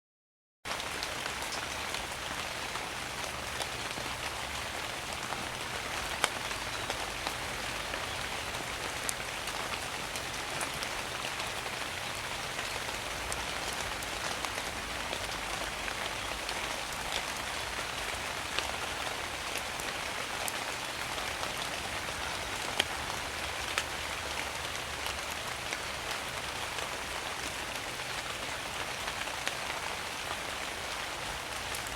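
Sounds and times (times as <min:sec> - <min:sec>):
rain falling through leaves: 0:00.7 - 0:31.9.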